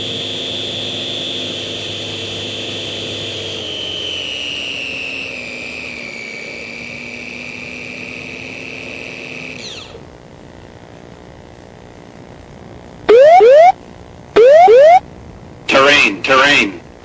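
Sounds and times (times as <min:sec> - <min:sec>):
model plane motor and propeller whining: 0:00.0 - 0:10.1.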